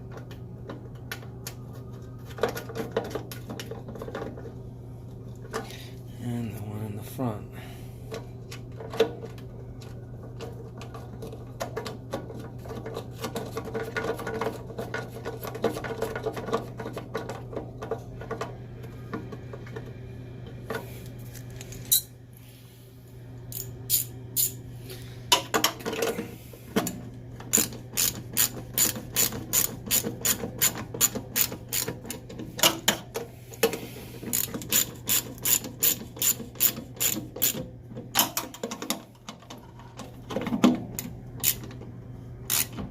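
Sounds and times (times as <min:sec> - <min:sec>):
steady low hum: 0:00.0 - 0:42.9
ratchet wrench clicking: 0:27.5 - 0:31.9, 0:34.3 - 0:37.6, 0:42.5 - 0:42.8.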